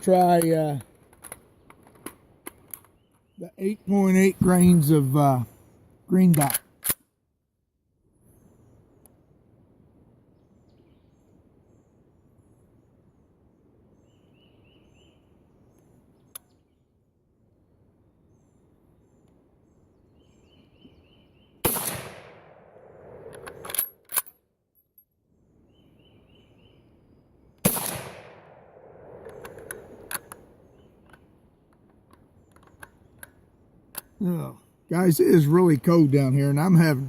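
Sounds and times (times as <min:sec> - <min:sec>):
sharp metallic clicks: 0:06.2 - 0:07.2, 0:29.2 - 0:34.2
rifle shots: 0:21.6 - 0:23.8, 0:27.6 - 0:30.2.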